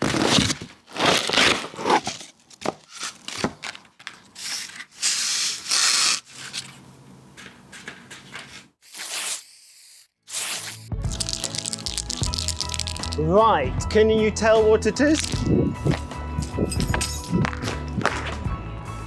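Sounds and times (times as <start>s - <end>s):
paper folding and crinkling: 0.0s - 6.8s, 10.3s - 13.2s, 15.1s - 18.2s.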